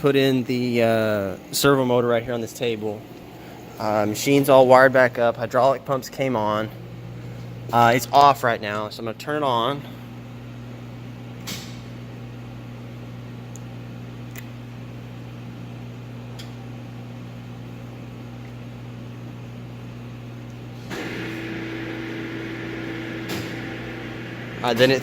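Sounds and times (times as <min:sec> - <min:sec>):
steady low hum: 0:00.0 - 0:25.0
machine whir with steady tone: 0:14.8 - 0:25.0.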